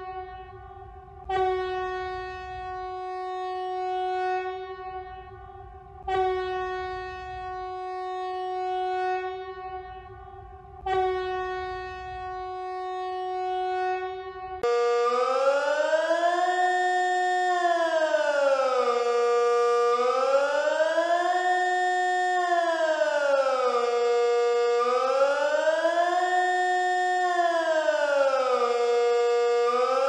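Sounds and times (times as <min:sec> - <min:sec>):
buzzy emergency alarm tone: 0:11.6 - 0:20.3.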